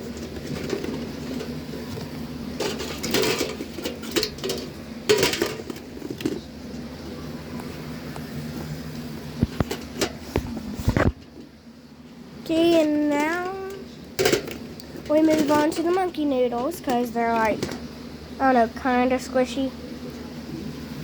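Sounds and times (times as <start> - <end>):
steady low hum: 0.0 - 21.0
toys rustling: 12.5 - 17.8
toys clicking and knocking: 14.2 - 17.8.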